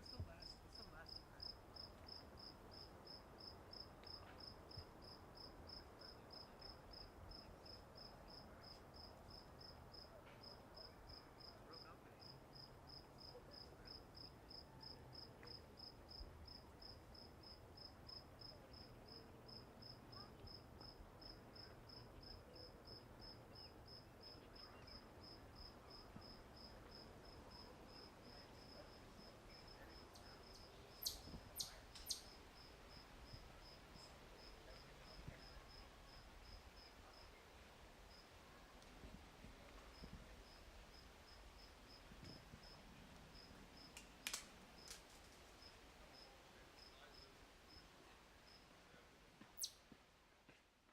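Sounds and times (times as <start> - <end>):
crickets chirping: 0.0 - 38.7, 39.6 - 49.0, 49.6 - 49.8
sharp clicks: 44.0 - 45.0.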